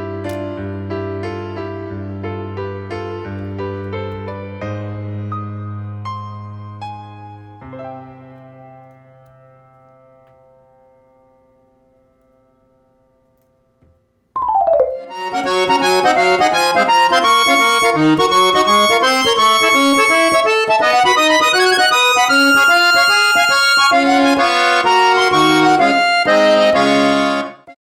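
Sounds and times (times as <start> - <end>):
bright instrumental melody: 14.4 - 27.7.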